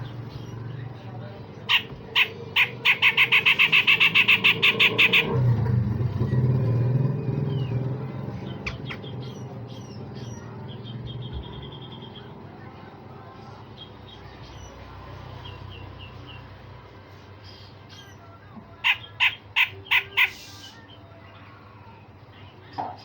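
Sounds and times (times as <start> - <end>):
bird chirps and trill: 0.0 - 5.5, 6.2 - 12.9, 13.6 - 23.0.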